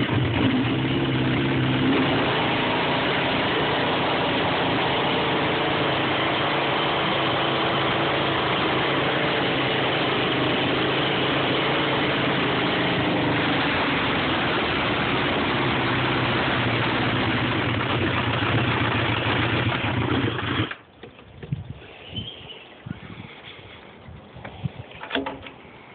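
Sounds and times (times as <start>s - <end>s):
vehicle engine idling roughly: 0.0s - 20.8s.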